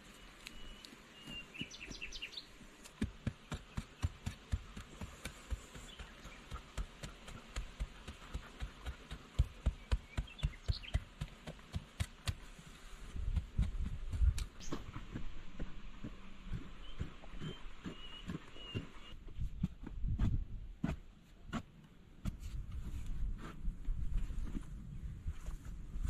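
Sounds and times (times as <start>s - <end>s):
bird chirping: 0.0s - 2.6s, 5.5s - 6.8s, 9.4s - 11.2s, 16.5s - 19.2s.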